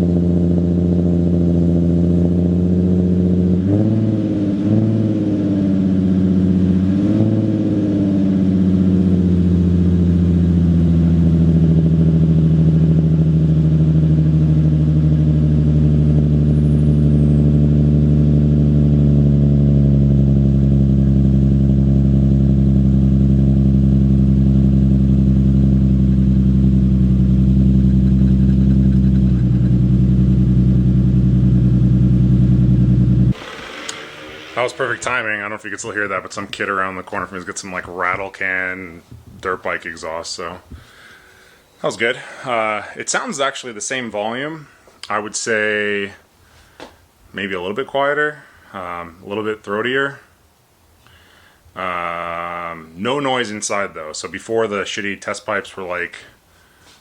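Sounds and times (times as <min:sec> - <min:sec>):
car engine revving and idling: 0:00.0 - 0:38.2.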